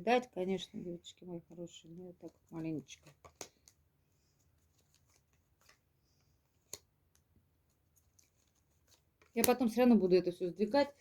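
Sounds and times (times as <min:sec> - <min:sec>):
cards rustling: 0:01.5 - 0:09.8
faint clicks of cards: 0:03.0 - 0:03.8, 0:04.8 - 0:07.3.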